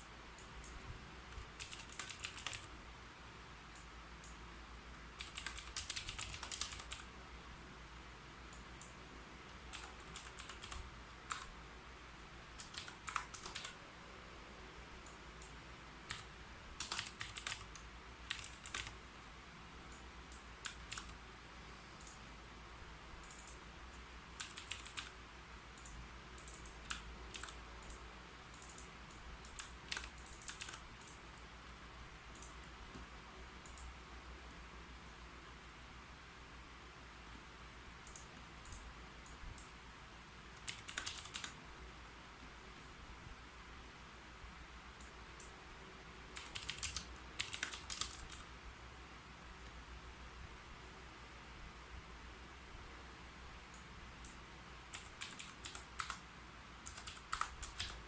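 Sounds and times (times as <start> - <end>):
keyboard typing clicks: 0.4 - 2.7, 5.2 - 7.1, 8.5 - 11.5, 12.6 - 13.8, 15.0 - 19.0, 19.9 - 21.2, 23.2 - 31.2, 32.3 - 34.0, 38.0 - 39.8, 40.6 - 41.6, 46.3 - 48.5, 53.7 - 56.2, 56.8 - 58.0.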